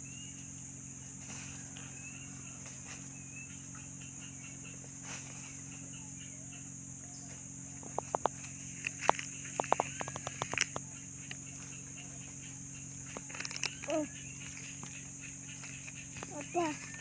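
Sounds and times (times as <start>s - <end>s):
insects droning: 0.0s - 17.0s
faint bird chirps: 1.3s - 17.0s
sharp clicks: 7.8s - 11.4s.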